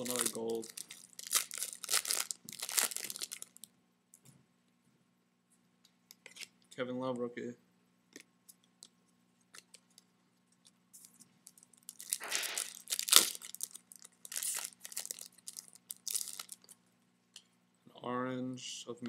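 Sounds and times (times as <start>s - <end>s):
foil wrapper tearing and crinkling: 0.0s - 3.7s, 11.0s - 16.8s
cards being handled: 12.2s - 13.3s.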